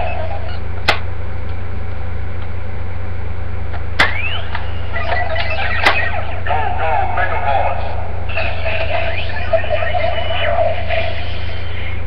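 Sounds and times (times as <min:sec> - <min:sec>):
low electrical hum: 0:00.0 - 0:12.0
short rising whistle-like tone: 0:04.1 - 0:05.0.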